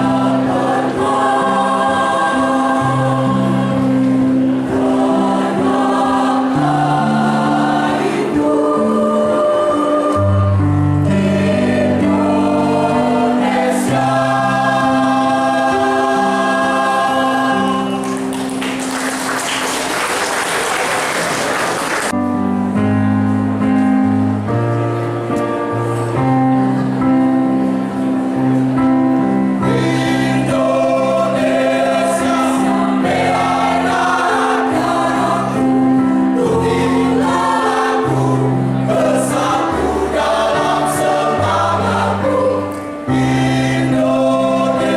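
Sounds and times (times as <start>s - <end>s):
mixed choir singing chords: 0.0s - 22.2s, 26.4s - 44.9s
applause: 18.0s - 22.1s.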